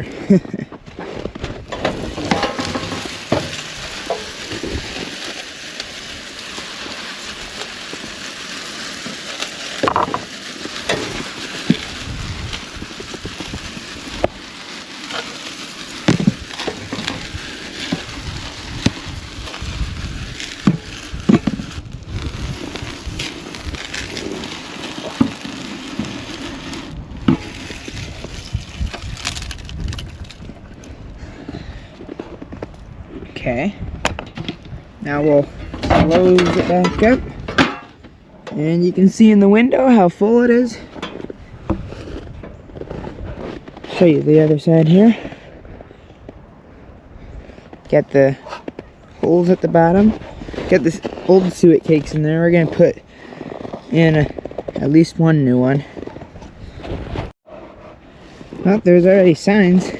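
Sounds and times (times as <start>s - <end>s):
seed knocking and clattering: 1.6s - 30.6s
birdseed pouring hissing rattle: 2.0s - 29.2s.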